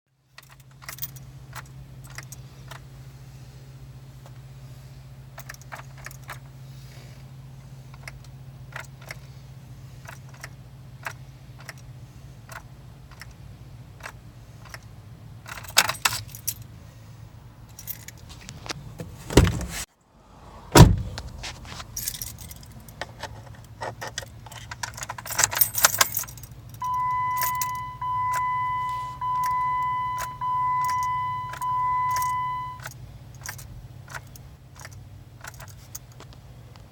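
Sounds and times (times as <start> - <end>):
keys jangling at ignition: 0.3 - 2.8, 5.4 - 6.5, 7.9 - 9.3, 10.0 - 11.9, 12.5 - 13.4, 14.0 - 16.7, 17.7 - 18.7, 21.6 - 36.3.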